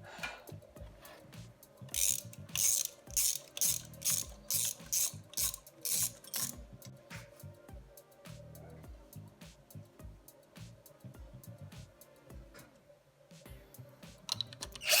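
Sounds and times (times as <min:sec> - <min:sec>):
ratchet wrench clicking: 0:01.8 - 0:07.0, 0:14.3 - 0:15.0.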